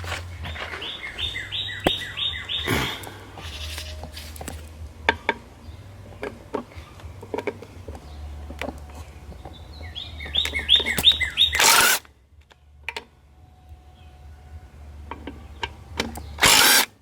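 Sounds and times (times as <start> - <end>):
bird chirping: 0.0 - 12.0
steady low hum: 0.0 - 17.0.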